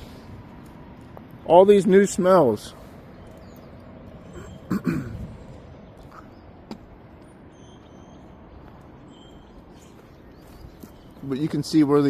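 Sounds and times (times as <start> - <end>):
faint bird chirps: 3.1 - 4.9, 5.7 - 11.4.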